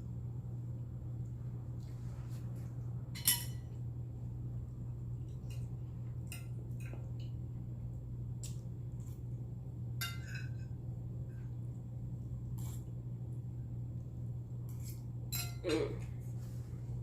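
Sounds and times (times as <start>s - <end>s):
steady low hum: 0.0s - 17.0s
fork clinking on plate: 3.2s - 3.7s, 10.0s - 10.8s, 15.3s - 15.7s.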